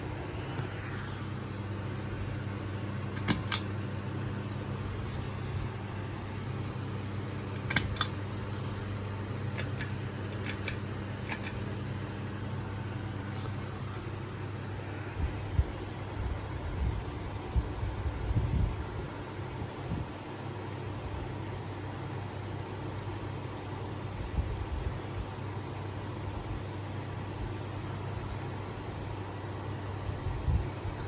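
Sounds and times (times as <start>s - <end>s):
ceiling fan motor hum: 0.0s - 31.0s
sharp clicks: 2.6s - 5.2s, 7.0s - 12.1s.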